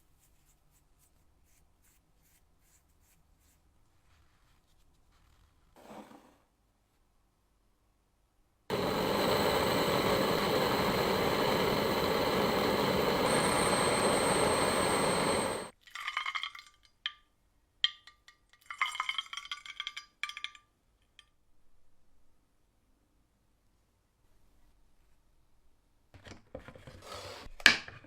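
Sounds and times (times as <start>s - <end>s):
hissing machine with high whine: 8.7s - 15.7s.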